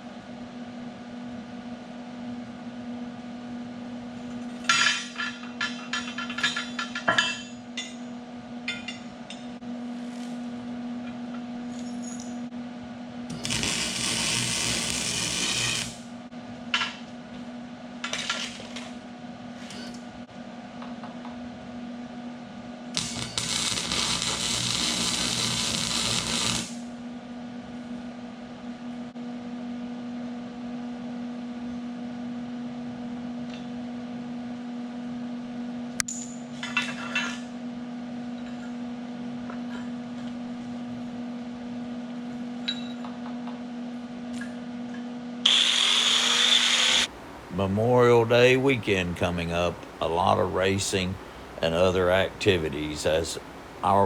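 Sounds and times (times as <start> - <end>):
welder electrical hum: 0.0 - 54.0
crackling hiss of welding: 13.3 - 16.2, 23.0 - 26.9, 45.5 - 54.0.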